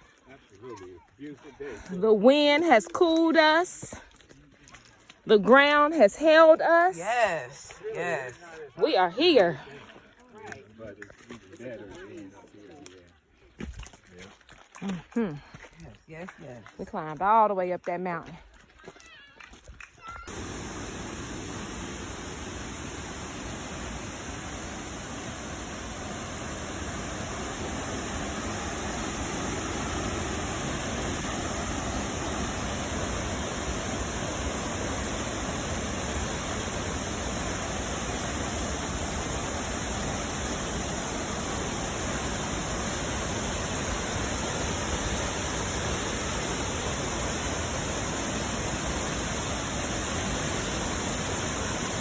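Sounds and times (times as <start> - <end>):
waterfall rushing: 20.3 - 52.0.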